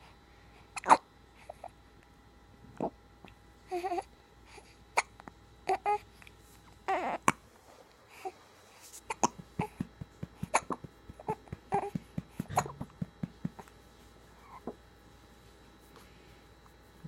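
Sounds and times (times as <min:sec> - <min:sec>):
baby hiccuping: 0:12.5 - 0:12.8.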